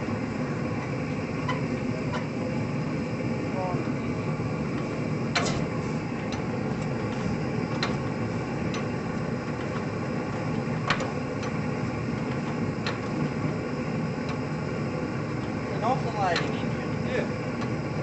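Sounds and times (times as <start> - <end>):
engine chugging rumble: 0.0 - 18.0
sharp engine clicks: 4.7 - 13.2.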